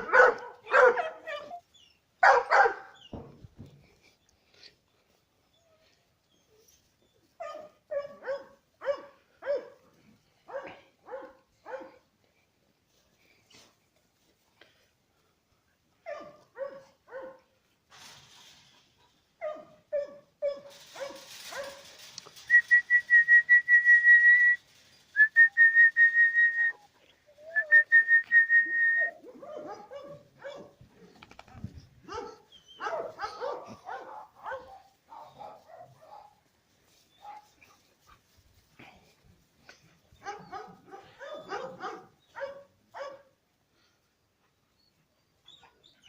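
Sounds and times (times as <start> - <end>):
dogs barking: 0.0 - 1.6, 2.2 - 3.0, 7.4 - 9.8, 16.1 - 17.5, 29.3 - 30.8, 32.1 - 36.4, 40.2 - 43.3.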